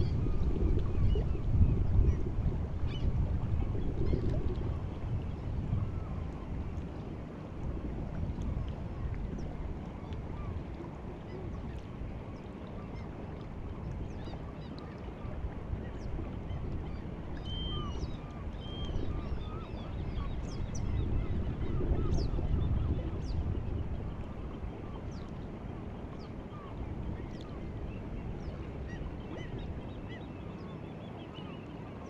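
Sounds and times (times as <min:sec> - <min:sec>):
sea water washing: 0:00.0 - 0:32.0
faint bird calls and chirps: 0:15.9 - 0:23.4.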